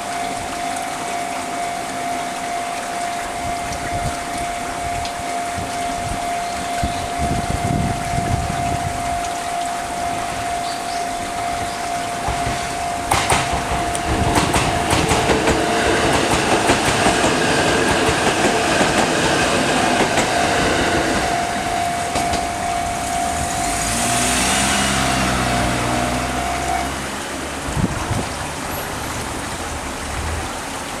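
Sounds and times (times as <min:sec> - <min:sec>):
level crossing alarm ringing: 0:00.0 - 0:27.1
train wheels clacking over rail joints: 0:12.2 - 0:23.1
low engine hum: 0:19.7 - 0:30.7.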